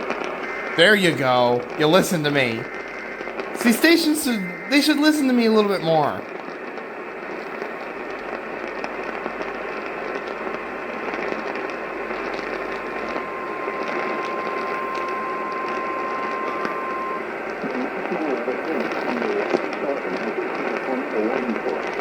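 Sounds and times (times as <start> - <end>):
radio static hiss: 0.0 - 6.3, 7.4 - 22.0
steady alert tone: 3.6 - 6.2, 12.6 - 17.2.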